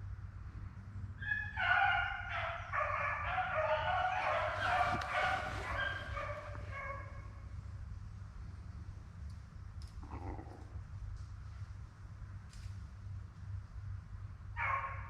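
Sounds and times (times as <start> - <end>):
hounds baying: 1.2 - 7.3, 14.6 - 15.0.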